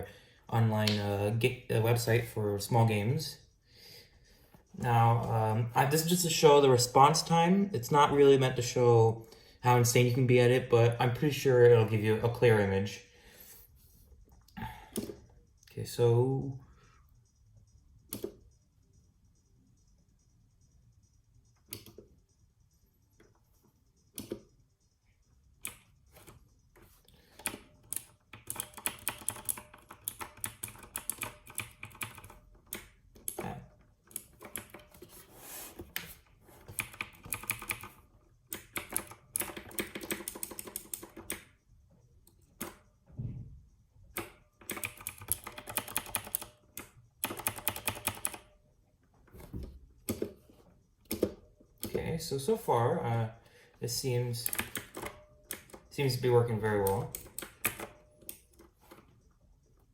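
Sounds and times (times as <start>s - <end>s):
rapid keyboard keystrokes: 25.6s - 41.6s, 44.2s - 48.6s, 54.4s - 59.2s.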